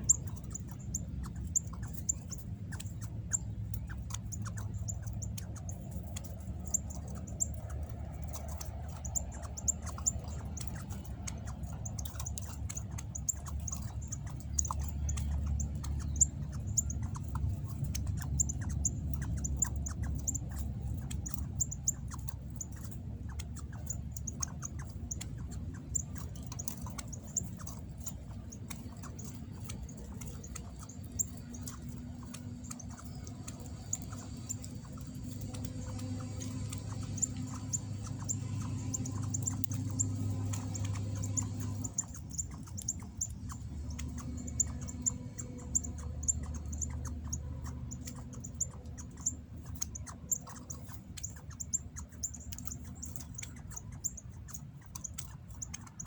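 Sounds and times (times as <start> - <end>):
bird chip calls: 0.0 - 56.0
scattered clicks: 0.0 - 56.0.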